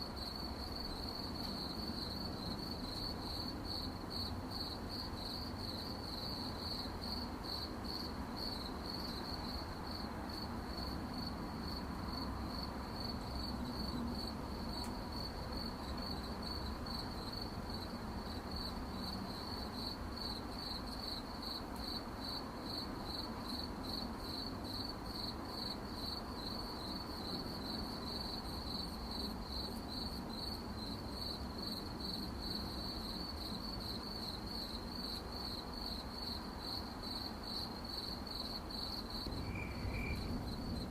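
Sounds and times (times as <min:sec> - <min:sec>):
crickets chirping: 0:00.0 - 0:40.9
faint low hum: 0:39.0 - 0:40.9.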